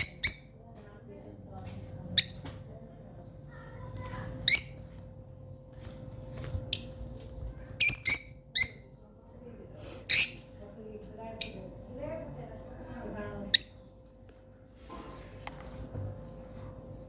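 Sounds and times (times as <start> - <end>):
lovebirds chirping: 0.0 - 0.5, 2.2 - 2.5, 4.5 - 4.8, 6.7 - 7.0, 7.8 - 8.9, 10.1 - 10.4, 11.4 - 11.7, 13.5 - 13.8.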